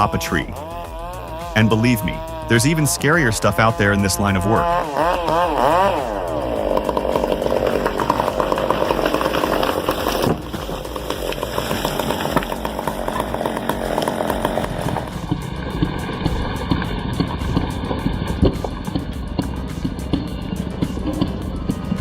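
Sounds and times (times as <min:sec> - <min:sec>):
chainsaw engine revving: 0:00.0 - 0:22.0.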